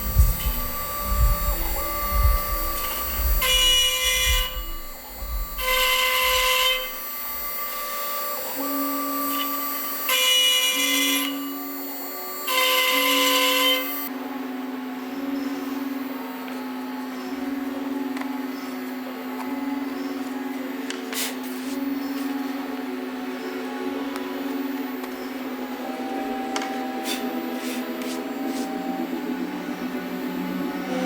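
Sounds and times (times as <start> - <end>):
bit cutting into wood: 0.0 - 11.5
router spindle whine: 0.0 - 31.0.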